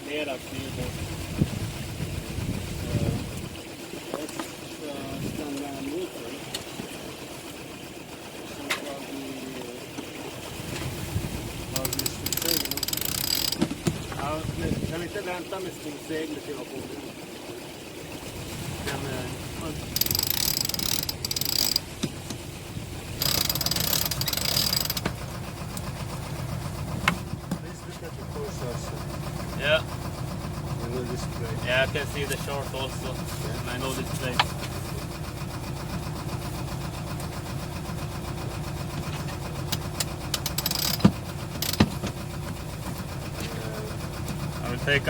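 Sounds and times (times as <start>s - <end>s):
boat engine running at low revs: 0.0s - 45.0s
winch ratcheting: 5.4s - 14.2s, 17.5s - 37.4s, 38.8s - 44.9s
sharp clicks: 11.8s - 13.7s, 20.0s - 22.5s, 23.2s - 25.1s, 39.7s - 41.9s.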